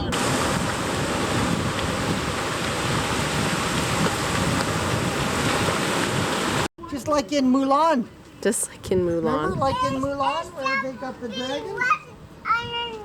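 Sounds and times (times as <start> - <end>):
rushing wind: 0.0 - 6.7, 8.8 - 10.5
wind buffeting microphone: 0.0 - 7.2, 8.7 - 10.8.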